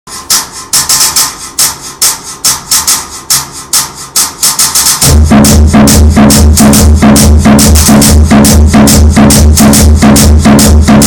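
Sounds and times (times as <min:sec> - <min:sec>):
bass and kick drum beat: 0:00.1 - 0:11.0.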